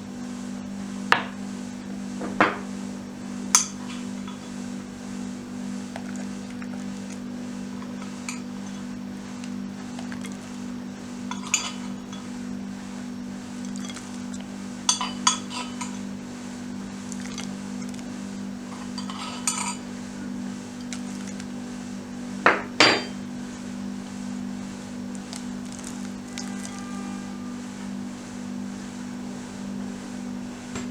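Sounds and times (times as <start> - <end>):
steady low hum: 0.0 - 30.9
utensils clinking against dishes: 7.8 - 8.8, 11.3 - 12.3, 13.6 - 16.0, 18.7 - 19.9, 22.5 - 23.3, 25.7 - 27.2.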